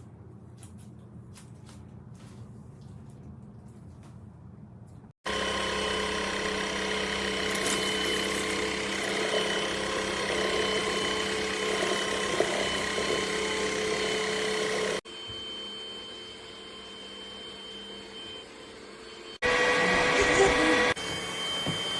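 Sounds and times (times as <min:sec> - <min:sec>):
stick vacuum motor whining: 0:05.3 - 0:21.9.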